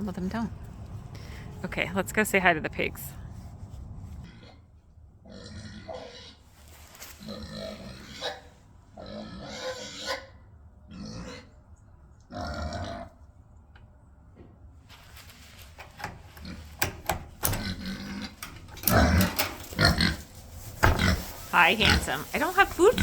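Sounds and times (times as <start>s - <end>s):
pigs grunting and screaming: 5.2s - 6.4s, 7.2s - 11.6s, 12.3s - 13.2s, 17.7s - 20.3s
pigs squealing: 5.3s - 6.5s, 7.2s - 11.5s, 12.3s - 13.1s.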